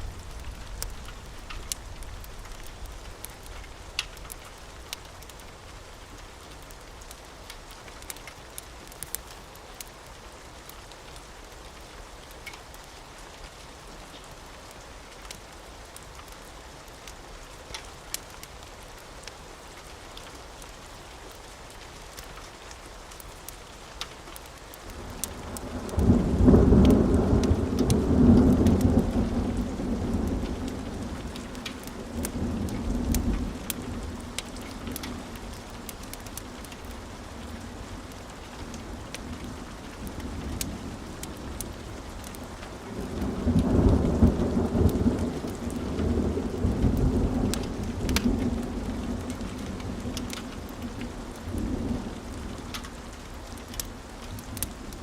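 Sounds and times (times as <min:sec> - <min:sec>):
rolling thunder rumble: 0:00.0 - 0:04.9, 0:25.1 - 0:53.6
steady rain falling: 0:00.0 - 0:55.0.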